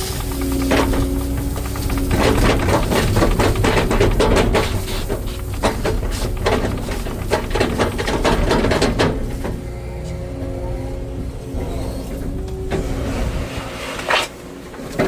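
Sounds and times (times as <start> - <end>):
machine knocks and scrapes: 0.0 - 9.8
excavator engine rumbling: 0.0 - 15.0.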